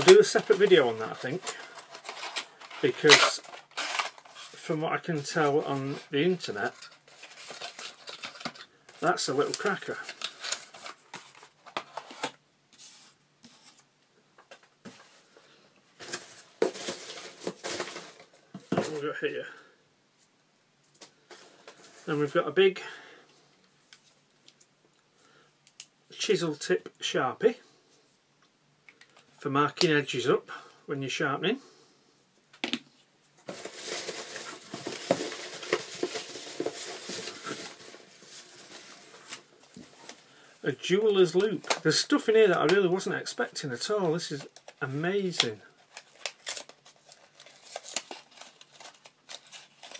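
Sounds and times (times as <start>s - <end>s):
packaging rustling: 0.0s - 12.4s, 16.0s - 19.0s, 33.4s - 40.4s, 44.2s - 49.9s.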